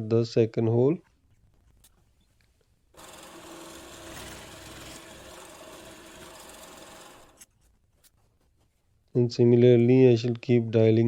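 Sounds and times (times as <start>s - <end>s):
power tool boring wood: 3.0s - 7.5s.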